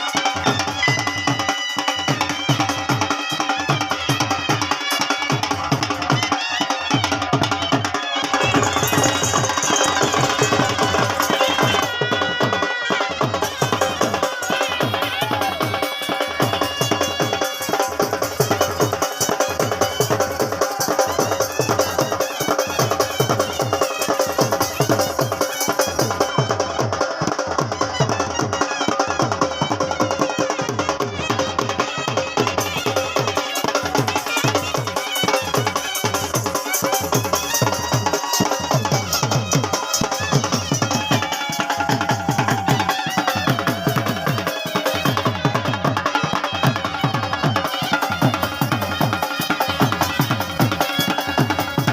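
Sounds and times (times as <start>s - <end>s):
music with fast dense drumming: 0.0s - 51.9s.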